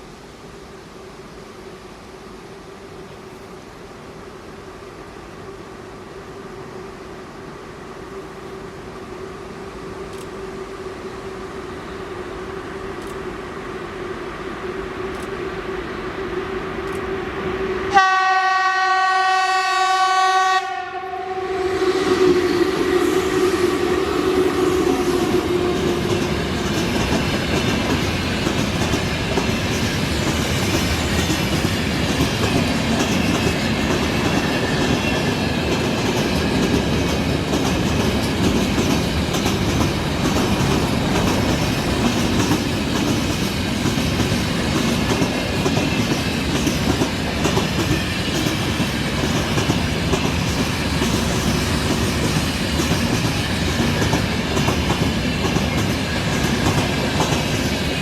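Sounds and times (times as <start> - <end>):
train rumbling past: 0.0 - 58.0
wheels clickety-clack: 25.7 - 58.0.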